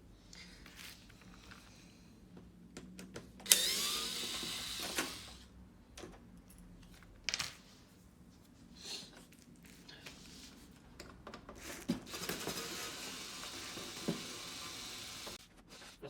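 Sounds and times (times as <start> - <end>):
cordless screwdriver whirring: 3.4 - 5.4, 12.1 - 15.4.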